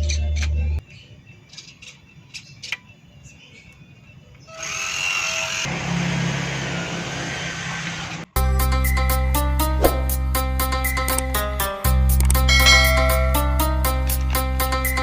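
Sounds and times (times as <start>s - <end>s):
plucked-string music: 8.4s - 15.0s.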